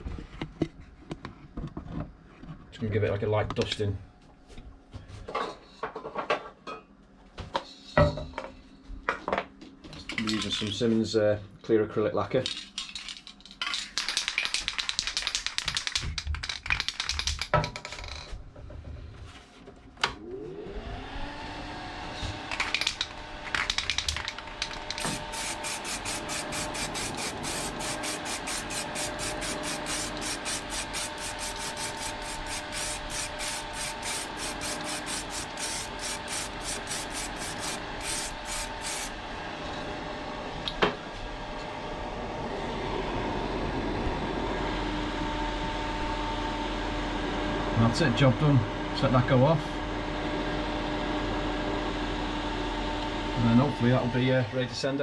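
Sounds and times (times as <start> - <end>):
aerosol can rattling and hissing: 12.8 - 17.5, 22.6 - 39.2
motor running with fast ticking: 24.3 - 39.2.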